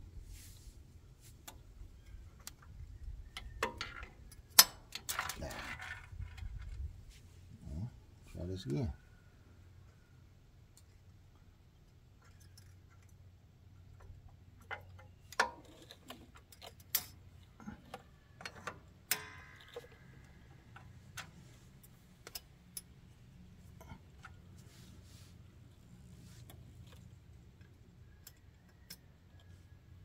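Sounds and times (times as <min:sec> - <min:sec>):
metallic clicks and clanks: 0:03.3 - 0:06.7, 0:14.0 - 0:24.4.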